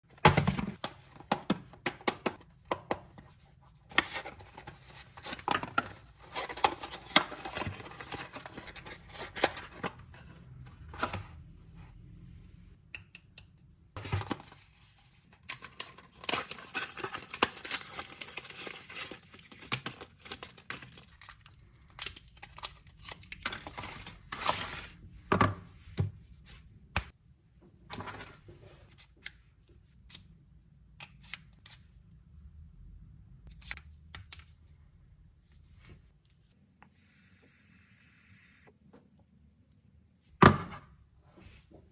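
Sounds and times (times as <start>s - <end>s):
packaging tearing and crinkling: 15.6s - 24.7s.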